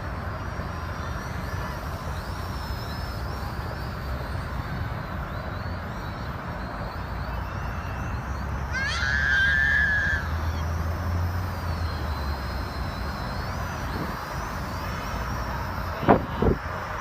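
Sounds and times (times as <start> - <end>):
steady hissing: 0.0 - 17.0.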